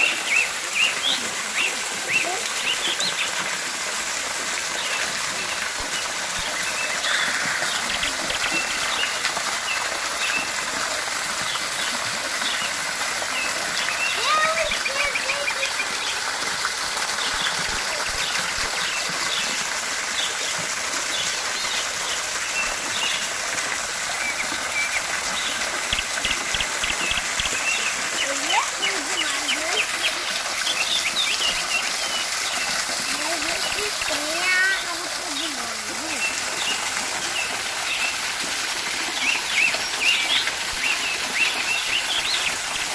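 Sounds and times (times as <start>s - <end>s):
waterfall rushing: 0.0s - 42.9s
small birds chirping: 4.6s - 23.4s, 24.1s - 38.3s, 38.9s - 42.9s
loud bird call: 6.8s - 8.8s.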